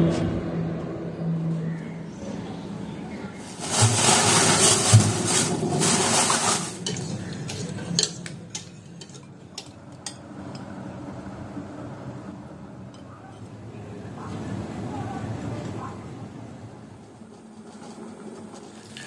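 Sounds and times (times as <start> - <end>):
water pouring: 3.4 - 8.2
utensils clinking against dishes: 3.4 - 10.7.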